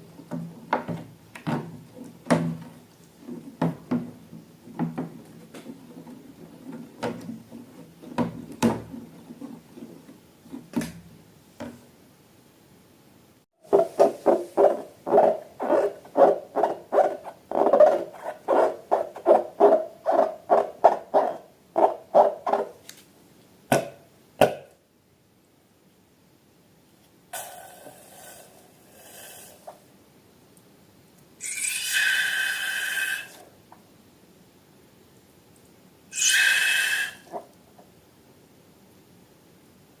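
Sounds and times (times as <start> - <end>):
knocks and clicks of objects handled: 0.2 - 11.9
air hissing out of balloon: 31.4 - 33.4, 36.1 - 37.3
high squeal: 36.2 - 37.3.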